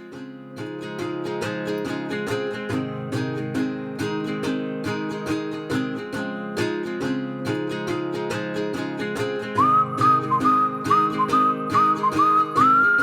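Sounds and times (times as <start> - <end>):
acoustic guitar tune: 0.0 - 13.0.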